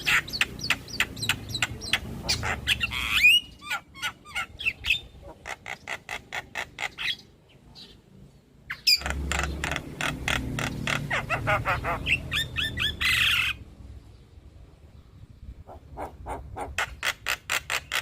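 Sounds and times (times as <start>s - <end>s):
myna chattering calls: 0.0s - 7.3s, 8.7s - 13.6s.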